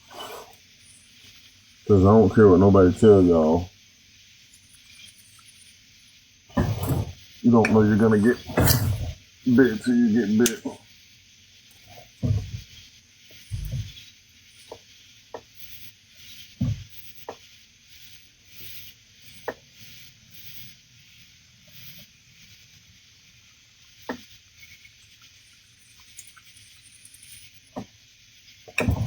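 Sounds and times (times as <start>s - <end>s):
high-pitched hiss: 0.0s - 29.0s
low thump: 12.2s - 12.8s, 13.5s - 14.0s, 16.6s - 16.9s.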